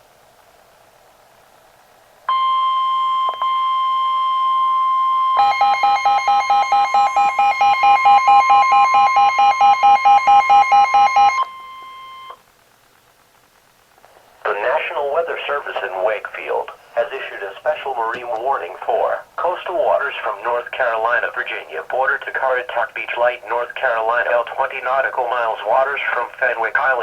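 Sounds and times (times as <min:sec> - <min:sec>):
high electronic alarm tone: 0:02.3 - 0:12.4.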